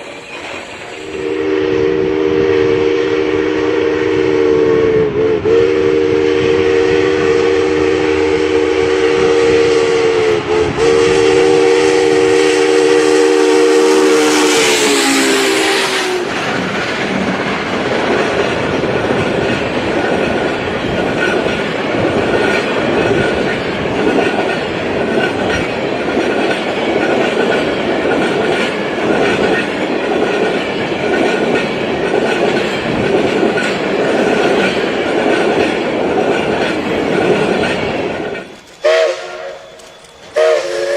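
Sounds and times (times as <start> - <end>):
train rumble: 0.0 - 40.9
locomotive horn chord: 1.1 - 16.3, 38.8 - 40.9
wheels clacking over rail joints: 14.9 - 38.9.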